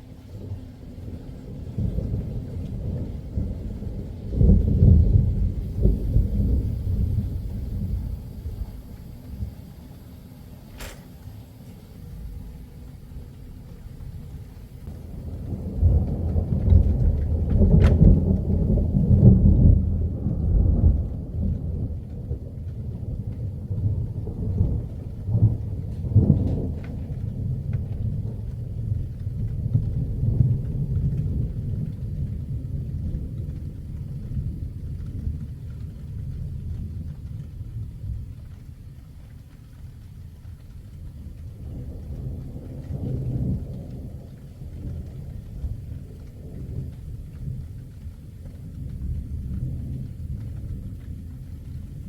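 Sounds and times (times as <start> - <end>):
thunder rumbling: 0.0 - 52.0
sharp thunder crack: 10.6 - 12.8.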